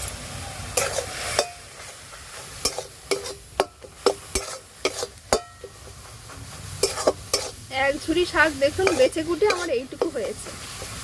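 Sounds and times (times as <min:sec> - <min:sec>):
faint sizzle: 0:00.0 - 0:11.0
spatula scraping a pan: 0:00.8 - 0:11.0.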